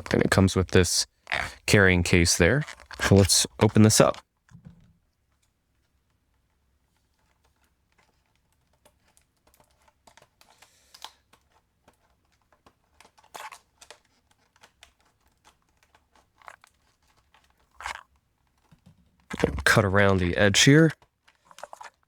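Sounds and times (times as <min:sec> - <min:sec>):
plastic packaging crinkling: 0:02.5 - 0:04.2.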